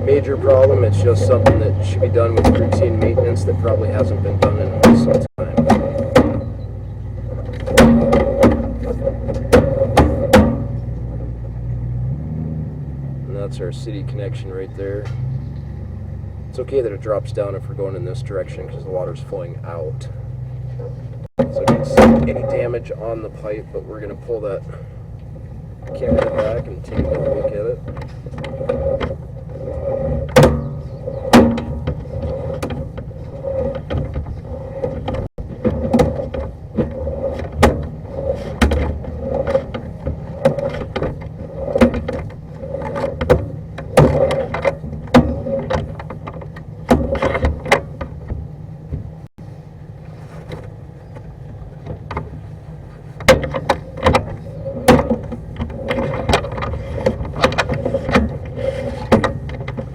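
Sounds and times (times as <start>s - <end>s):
pulsing hum: 17.4s - 59.9s.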